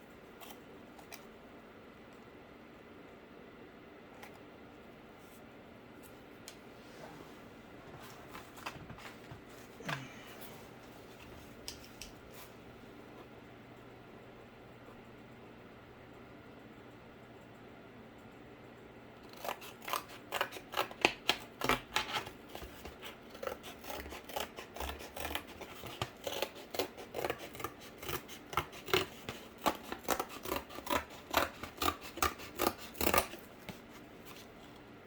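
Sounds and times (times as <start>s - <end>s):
scissors cutting cardboard: 19.2s - 34.6s.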